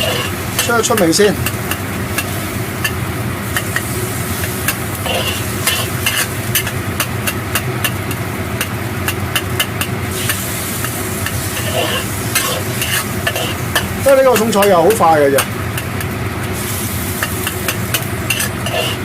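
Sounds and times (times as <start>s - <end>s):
metal spatula scraping pan: 0.0s - 14.9s, 17.2s - 19.0s
sauce sizzling in a wok: 0.0s - 19.0s
steady low hum: 0.0s - 19.0s.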